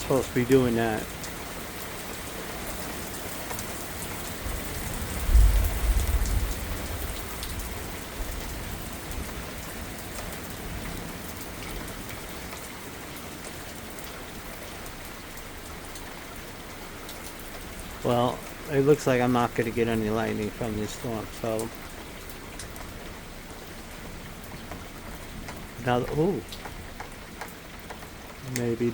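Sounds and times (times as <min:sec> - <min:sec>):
heavy rain: 0:00.0 - 0:28.9
low thunder rumble: 0:04.5 - 0:09.5.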